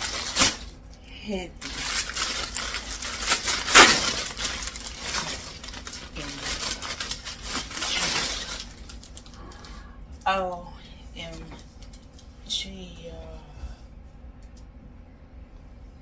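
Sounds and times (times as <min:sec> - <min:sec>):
packaging rustling and crinkling: 0:00.0 - 0:00.8, 0:01.6 - 0:09.8.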